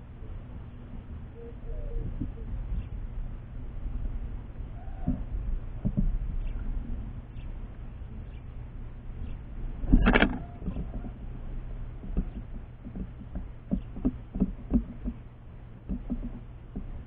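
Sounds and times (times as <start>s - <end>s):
steady low hum: 0.0s - 17.0s
bird pecking and tapping: 11.9s - 17.0s.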